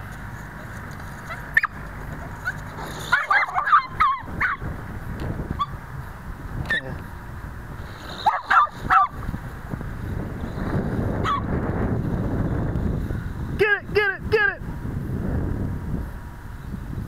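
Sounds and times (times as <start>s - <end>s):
dogs whining and yipping: 1.2s - 4.6s, 5.6s - 5.8s, 8.1s - 9.2s, 11.2s - 11.5s.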